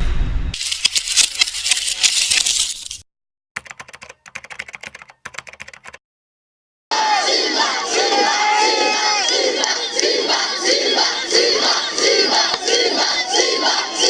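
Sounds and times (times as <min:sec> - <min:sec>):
rapid keyboard-like clicking: 0:03.6 - 0:06.0.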